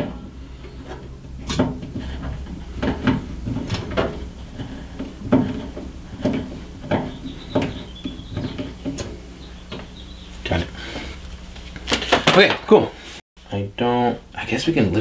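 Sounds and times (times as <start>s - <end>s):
computer case parts clicking and knocking: 0.0s - 10.6s, 11.8s - 12.8s.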